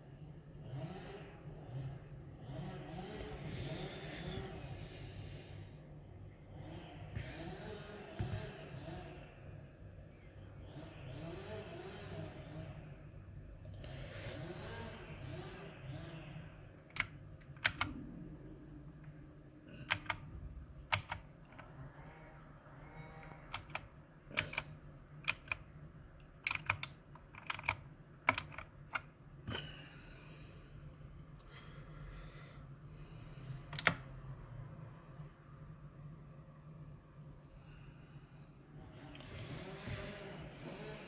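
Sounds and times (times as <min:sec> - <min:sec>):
mechanical keyboard key clicks: 0:16.9 - 0:17.9, 0:19.8 - 0:20.2, 0:20.9 - 0:21.7, 0:23.2 - 0:25.6, 0:26.4 - 0:29.0.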